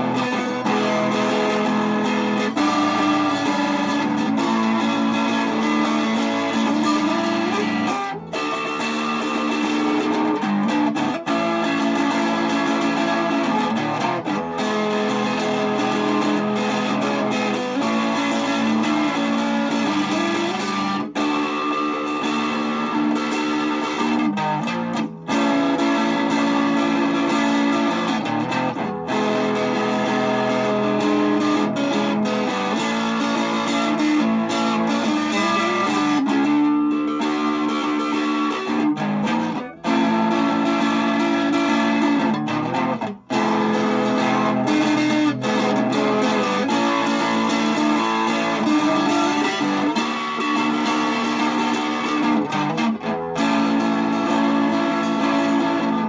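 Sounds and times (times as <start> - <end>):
electric guitar held chords: 0.0 - 56.0.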